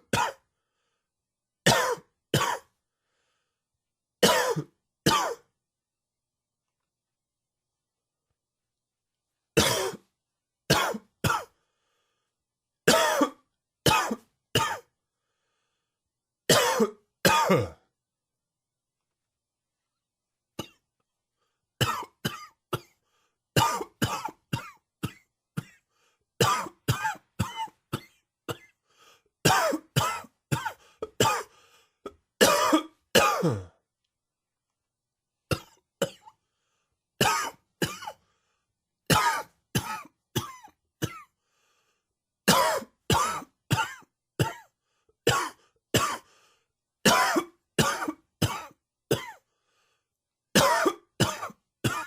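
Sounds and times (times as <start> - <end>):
man coughing: 4.2 - 5.5, 9.6 - 10.1, 12.9 - 14.9, 16.5 - 17.9, 29.5 - 31.5, 32.1 - 33.8, 37.2 - 38.2, 45.3 - 46.2, 47.1 - 49.4, 50.6 - 52.0.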